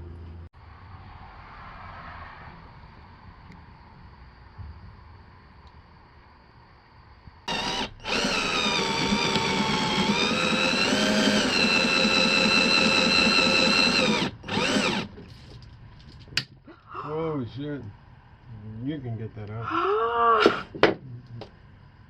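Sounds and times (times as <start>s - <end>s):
power drill whining: 7.5s - 15.1s.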